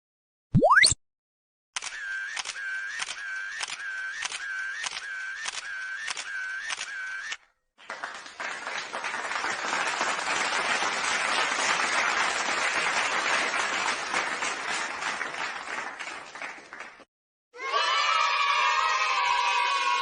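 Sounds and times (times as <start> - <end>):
crowd applauding: 7.8 - 17.1.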